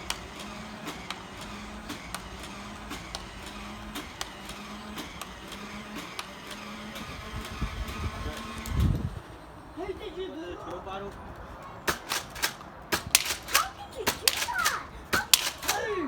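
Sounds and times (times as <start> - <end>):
toy blaster motor humming: 0.0 - 10.0, 11.9 - 16.0
darts firing with sharp clicks: 11.8 - 16.0.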